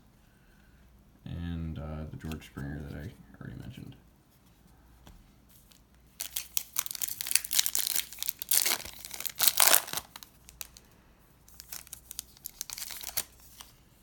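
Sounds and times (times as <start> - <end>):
foil wrapper tearing and crinkling: 6.2 - 10.8, 11.5 - 13.7.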